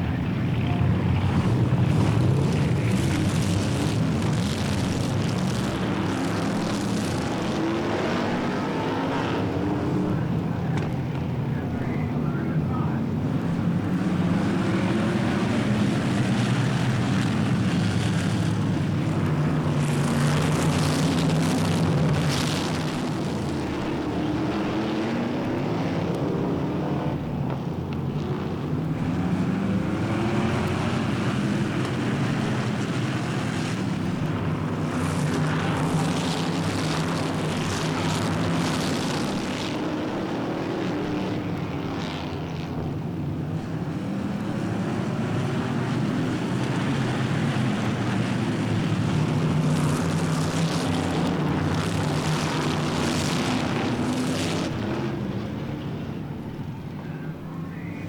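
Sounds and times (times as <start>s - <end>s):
stock car engines racing: 0.0s - 58.0s.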